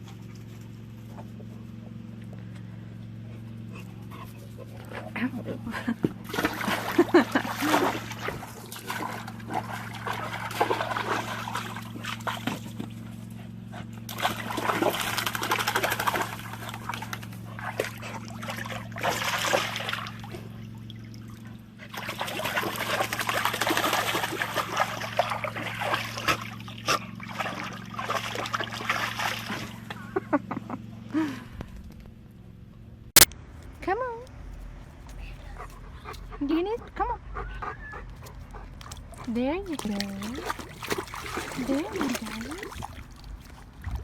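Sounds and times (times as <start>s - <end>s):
steady low hum: 0.0s - 44.0s
dog splashing in water: 5.7s - 13.2s, 14.0s - 29.9s, 38.2s - 44.0s.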